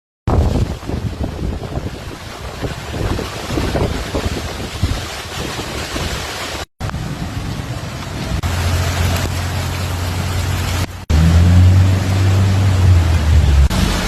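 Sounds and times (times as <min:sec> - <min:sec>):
wind noise: 0:00.3 - 0:10.9
heavy rain: 0:00.3 - 0:14.0
low engine hum: 0:07.4 - 0:14.0.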